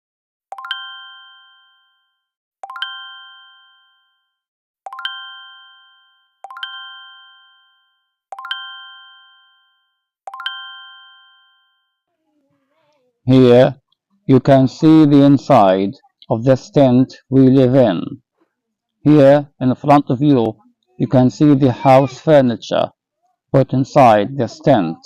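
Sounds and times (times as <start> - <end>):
chime ringing: 0.6 - 12.1.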